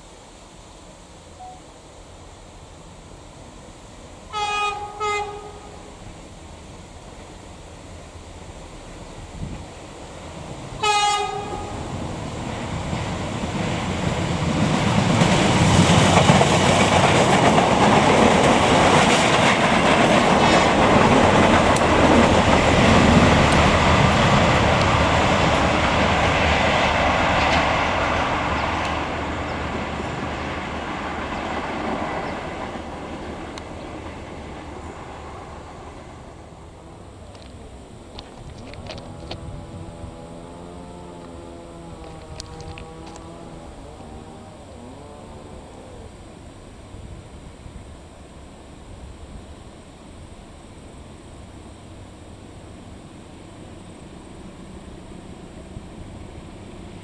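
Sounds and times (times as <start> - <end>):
train passing: 0.0 - 57.0
train horn blast: 4.3 - 6.0, 10.8 - 12.1, 38.9 - 45.6.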